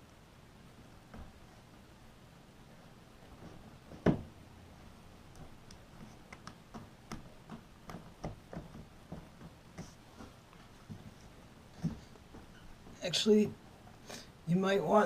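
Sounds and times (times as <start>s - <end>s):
hand tools clicking and tapping: 5.3s - 9.9s.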